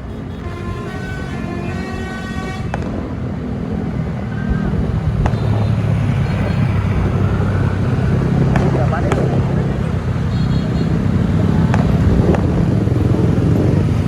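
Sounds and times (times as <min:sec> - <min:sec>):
bus horn chord: 0:00.0 - 0:02.8
heavy engine rumble: 0:00.0 - 0:14.0.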